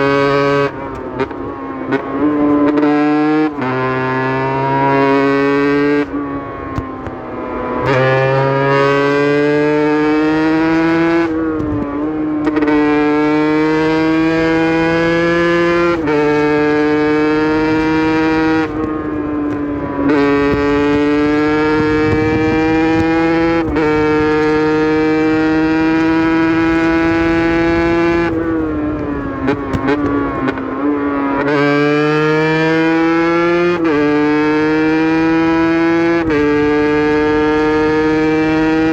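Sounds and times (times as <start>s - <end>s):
two-stroke motorcycle engine revving: 0.0s - 38.9s.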